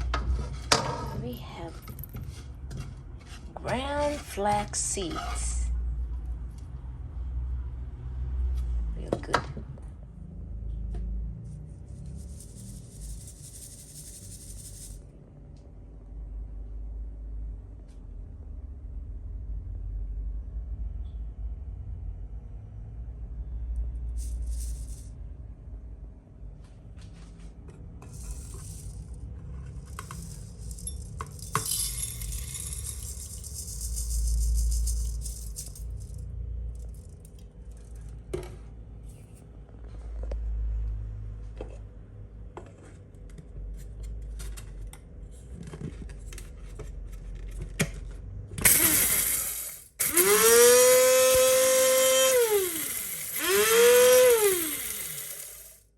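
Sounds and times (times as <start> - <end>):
electric grinder motor whining: 48.7 - 55.8.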